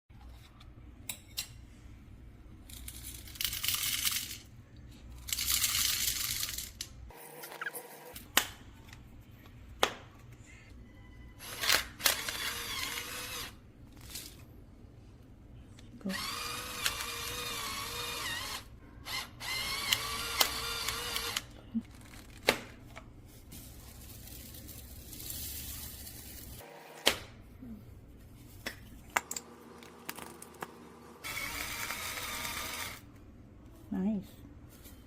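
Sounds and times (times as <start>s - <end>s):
electric pepper grinder whirring: 16.1s - 21.5s, 31.2s - 33.0s.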